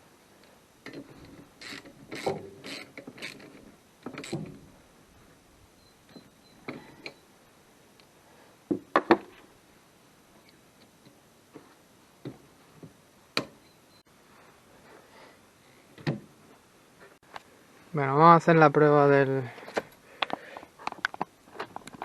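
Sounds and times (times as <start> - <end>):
hand tools and metal parts clicking: 0.8 - 4.7.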